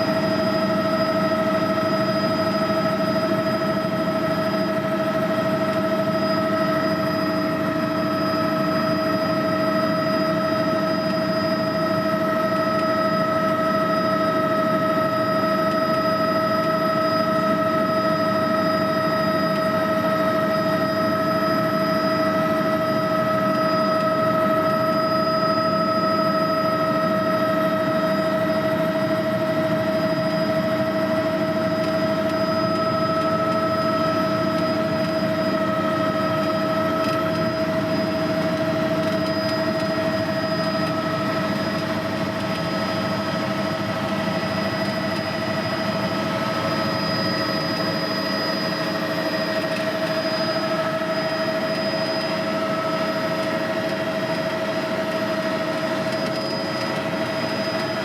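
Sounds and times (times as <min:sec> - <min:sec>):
helicopter engine and rotor drone: 0:00.0 - 0:58.0
high whining tones: 0:15.1 - 0:58.0.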